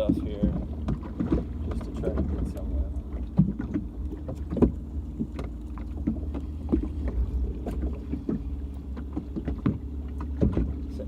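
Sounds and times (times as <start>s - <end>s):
boat motor humming: 0.0s - 11.0s.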